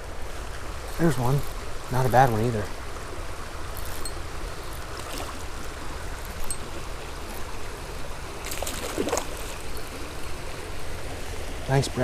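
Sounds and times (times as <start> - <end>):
creek water running: 0.0 - 12.0.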